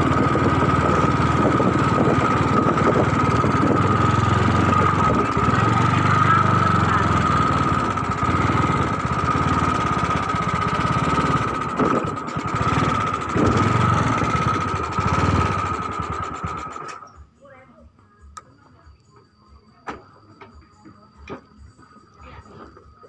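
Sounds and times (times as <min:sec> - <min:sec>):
engine idling with whine: 0:00.0 - 0:23.0.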